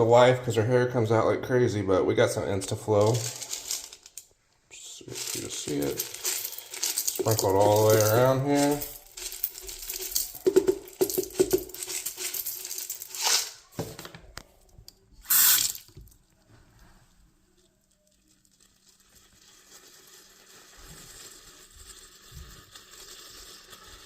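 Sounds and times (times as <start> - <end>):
crystals rattling into sink drain: 3.0 - 4.2, 5.1 - 13.6
faint steady sizzling: 17.4 - 24.0.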